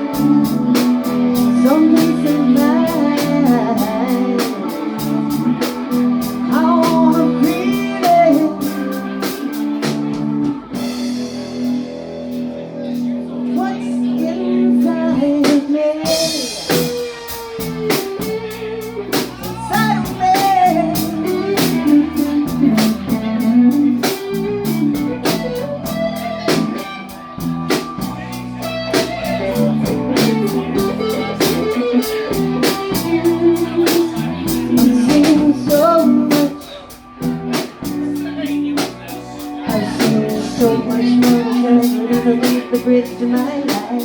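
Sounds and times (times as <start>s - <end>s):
steady drum beat: 0.0s - 13.8s, 15.2s - 44.0s
bass: 0.0s - 44.0s
electric guitar bending notes: 0.0s - 44.0s.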